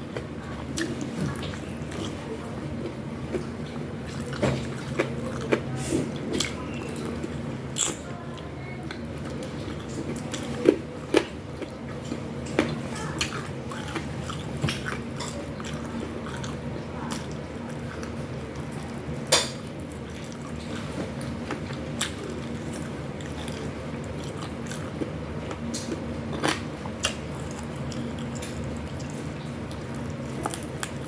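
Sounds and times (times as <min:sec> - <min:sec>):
steady low hum: 0:00.0 - 0:31.0
person chewing food: 0:00.1 - 0:31.0.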